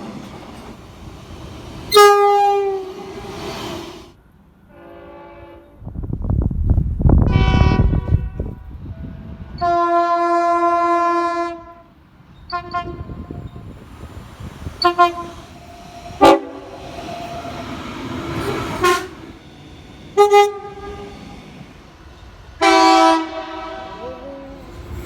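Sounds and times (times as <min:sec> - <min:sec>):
train horn blasts: 0:01.9 - 0:03.1, 0:04.7 - 0:05.8, 0:07.3 - 0:11.9, 0:12.5 - 0:13.4, 0:14.8 - 0:15.6, 0:16.2 - 0:17.4, 0:18.5 - 0:19.3, 0:20.2 - 0:21.2, 0:22.6 - 0:24.6.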